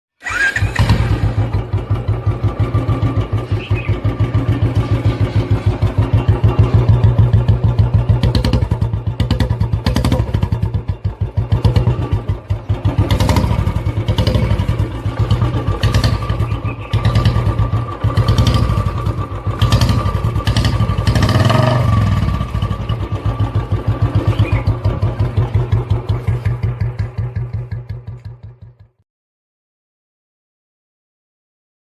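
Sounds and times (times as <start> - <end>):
motorcycle engine thumping: 0.8 - 28.9.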